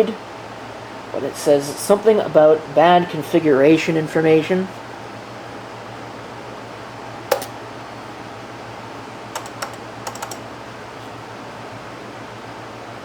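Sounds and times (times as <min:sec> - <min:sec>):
laptop keyboard key taps: 0:07.3 - 0:07.6.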